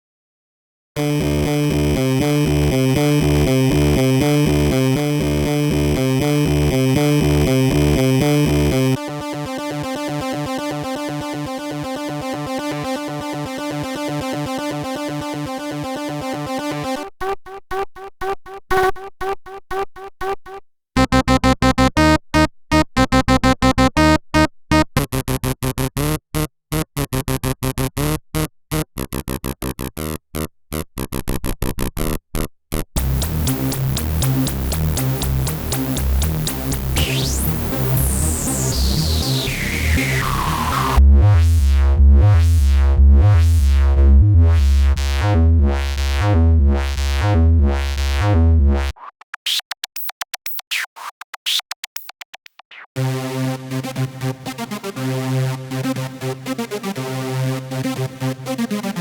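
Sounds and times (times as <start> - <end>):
pulsing synthesizer sequences: 21.0 - 24.9, 33.0 - 48.9.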